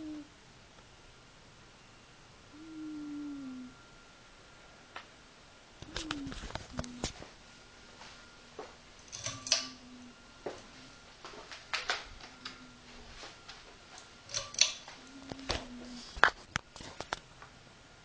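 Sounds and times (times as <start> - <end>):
cat snoring: 0.0 - 0.3, 2.5 - 3.8, 15.1 - 16.2.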